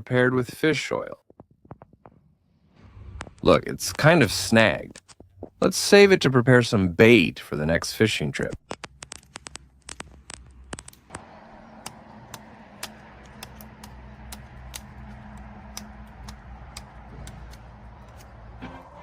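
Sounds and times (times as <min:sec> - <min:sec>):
wood fire crackling: 0:02.8 - 0:05.8, 0:08.5 - 0:19.0.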